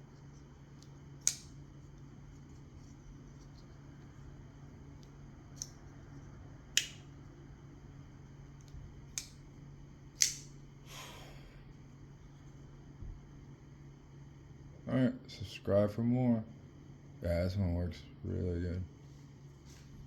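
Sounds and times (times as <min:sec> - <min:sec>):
lighter lid clicking: 0:10.2 - 0:10.6.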